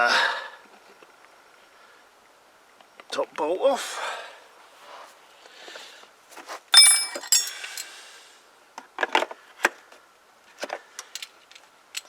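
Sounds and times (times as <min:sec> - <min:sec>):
ringing metal clatter: 0:06.8 - 0:07.6
metal tools clinking: 0:06.8 - 0:07.9.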